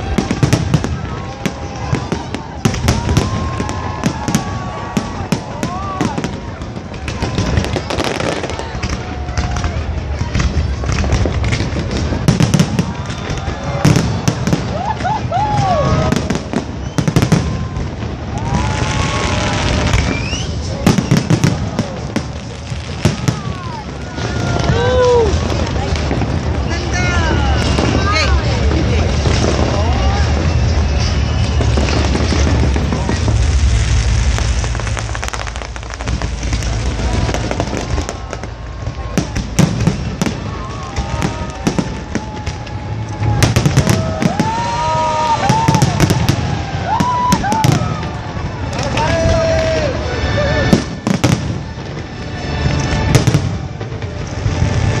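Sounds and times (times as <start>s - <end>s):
fireworks bursting: 0.0s - 55.0s
fireworks crackling and popping: 0.0s - 55.0s
whistling fireworks: 0.0s - 55.0s.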